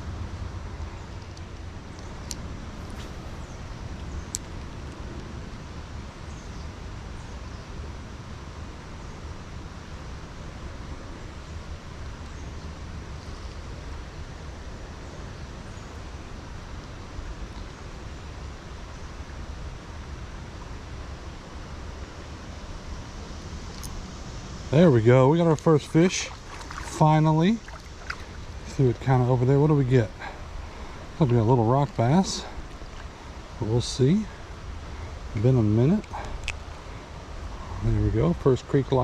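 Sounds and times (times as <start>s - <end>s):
fast creek rushing: 2.6s - 4.9s, 24.6s - 38.0s.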